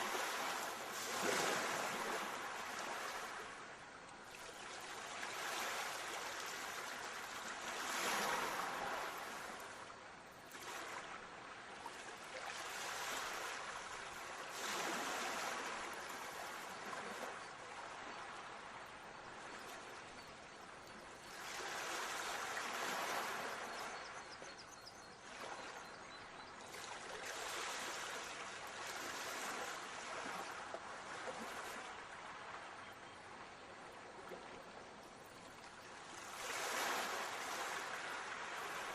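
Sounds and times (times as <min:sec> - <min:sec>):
sea waves washing onto shore: 0:00.0 - 0:03.6, 0:04.3 - 0:09.8.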